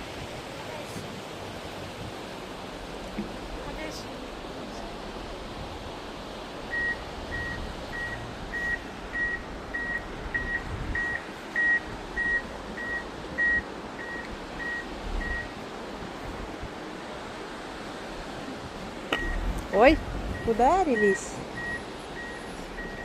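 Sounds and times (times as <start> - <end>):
reversing beeper beeps: 6.7 - 15.5, 20.4 - 23.0.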